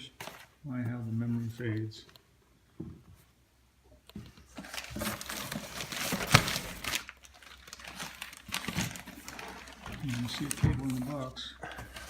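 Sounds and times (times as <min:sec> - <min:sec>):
packing material crinkling: 0:04.4 - 0:12.0.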